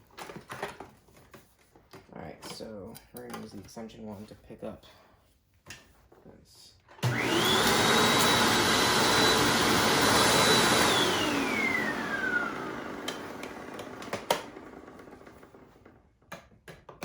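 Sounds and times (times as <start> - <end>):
vacuum cleaner whine: 7.0 - 16.0.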